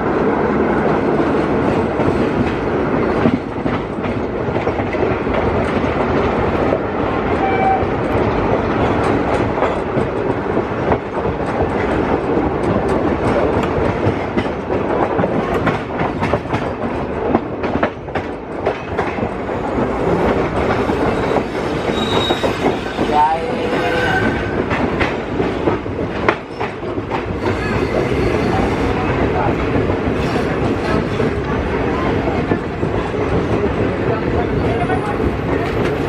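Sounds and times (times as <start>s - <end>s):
train wheels clattering over rail joints: 7.9s - 23.1s, 23.7s - 36.0s.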